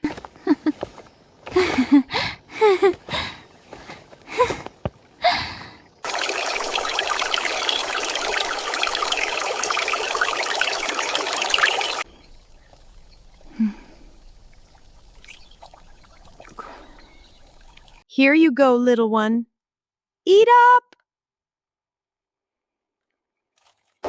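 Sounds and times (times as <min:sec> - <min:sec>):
water running in a stream: 0:05.4 - 0:18.0.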